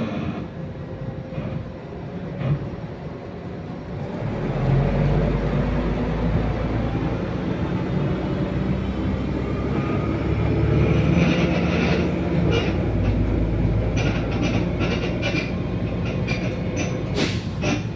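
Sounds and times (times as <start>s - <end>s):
bus engine and road rumble: 0.0s - 17.9s
bus body creaking: 9.7s - 17.9s.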